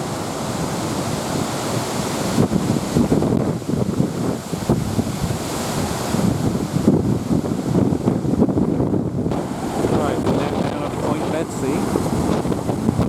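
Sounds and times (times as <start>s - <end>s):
lake waves breaking on shore: 0.0s - 13.0s
wind buffeting microphone: 0.0s - 13.0s.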